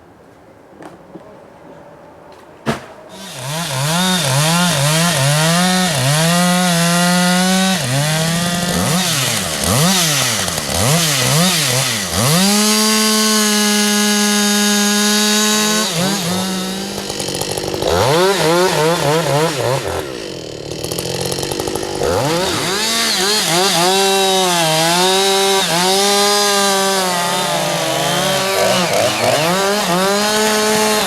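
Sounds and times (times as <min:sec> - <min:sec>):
chainsaw revving: 0:03.1 - 0:31.0.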